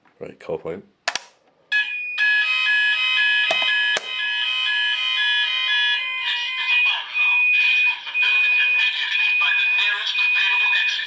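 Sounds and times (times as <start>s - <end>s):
sharp clicks: 1.1s - 1.4s
fire alarm warbling tones: 1.7s - 11.0s.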